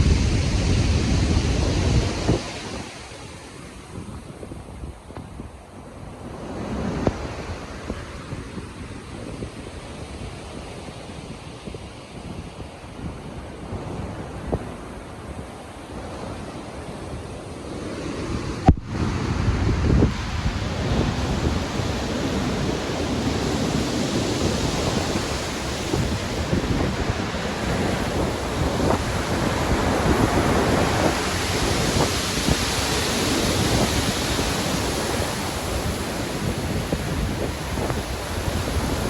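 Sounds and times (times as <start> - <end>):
ocean waves crashing: 0.0 - 4.8, 12.8 - 39.0
wind: 0.0 - 39.0.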